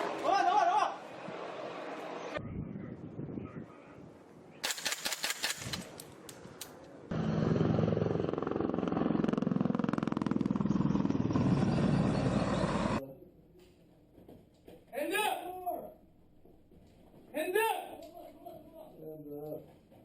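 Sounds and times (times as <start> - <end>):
sharp cracks: 4.6 - 6.8
engine running with fast pulse: 7.1 - 13.0.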